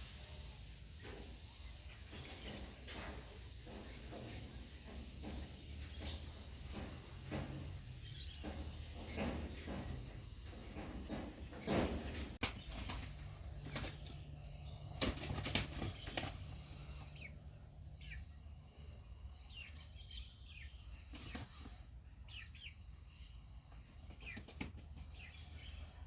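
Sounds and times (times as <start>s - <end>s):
birds chirping: 0.0s - 26.0s
bird wings flapping: 11.2s - 14.2s, 14.9s - 16.6s, 24.0s - 25.1s.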